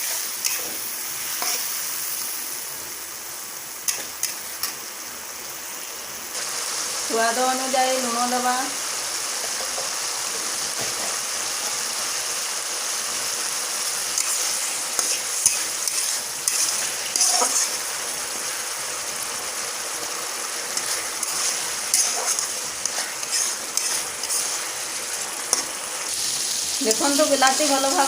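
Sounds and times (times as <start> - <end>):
spatula scraping a pan: 0.0 - 1.7, 14.2 - 18.6, 20.7 - 25.8
food sizzling in hot oil: 0.0 - 28.0.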